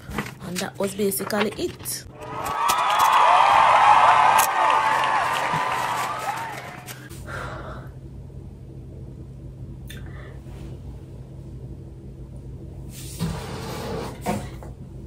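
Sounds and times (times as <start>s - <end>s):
steady low hum: 6.8s - 15.0s.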